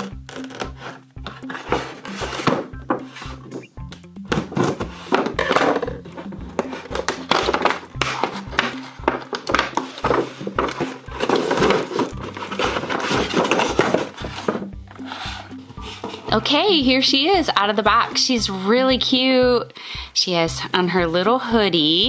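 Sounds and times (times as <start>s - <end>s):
background music with beat: 0.0s - 19.7s
plastic packaging crinkling: 6.6s - 14.6s.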